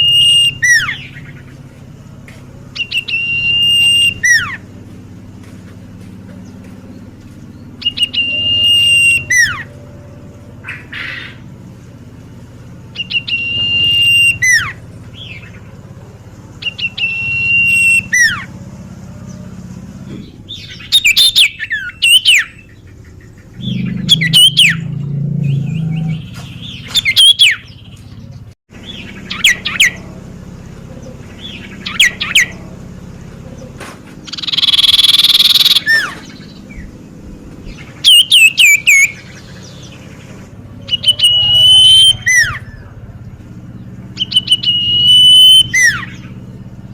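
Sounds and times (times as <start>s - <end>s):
bird whistled calls: 0.0s - 1.6s, 2.7s - 4.7s, 7.5s - 11.5s, 12.9s - 15.6s, 16.6s - 18.6s, 20.5s - 24.9s, 25.5s - 27.8s, 28.8s - 30.0s, 30.9s - 32.6s, 33.4s - 37.0s, 37.7s - 40.1s, 40.8s - 43.1s, 44.1s - 46.5s
bird rasping call: 0.0s - 4.9s, 6.2s - 27.8s, 28.8s - 46.8s.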